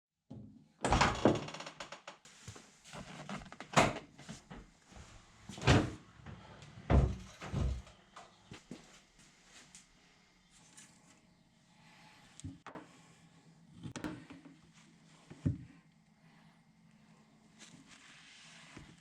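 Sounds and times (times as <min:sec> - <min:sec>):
knocks and clunks: 0:05.6 - 0:08.0.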